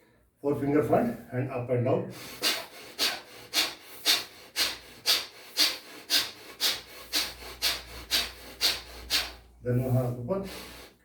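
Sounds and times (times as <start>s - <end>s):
rhythmic rasping strokes: 2.4s - 10.0s.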